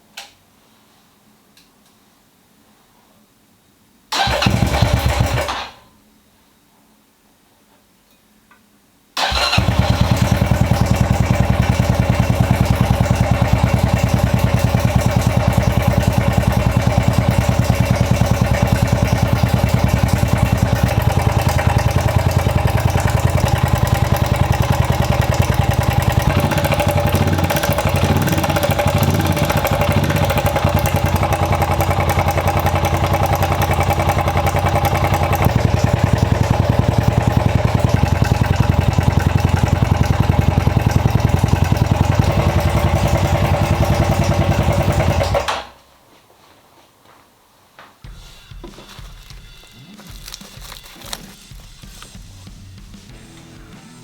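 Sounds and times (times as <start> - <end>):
motorcycle engine idling: 4.2 - 5.6, 9.2 - 45.5.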